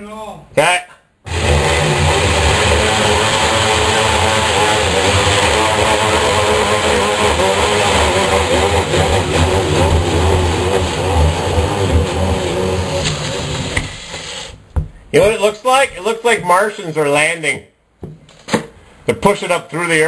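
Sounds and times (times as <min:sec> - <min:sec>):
electric drill cutting drywall: 0:01.3 - 0:14.6.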